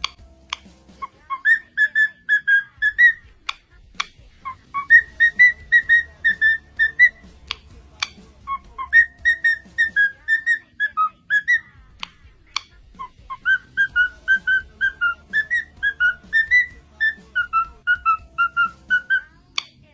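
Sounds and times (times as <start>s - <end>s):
sharp clicks: 0.0s - 0.9s, 2.9s - 4.2s, 5.8s - 8.2s, 12.0s - 12.8s
cockatiel whistling: 0.0s - 19.7s.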